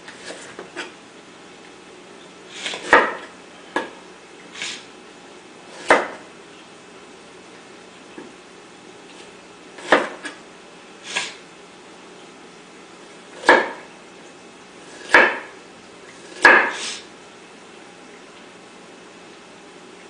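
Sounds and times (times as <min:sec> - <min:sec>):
utensil scraping: 0:00.0 - 0:00.9, 0:16.1 - 0:17.1.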